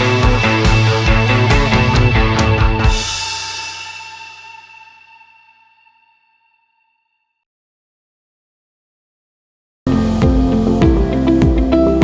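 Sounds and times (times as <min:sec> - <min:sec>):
synth music with steady beat: 0:09.9 - 0:12.0.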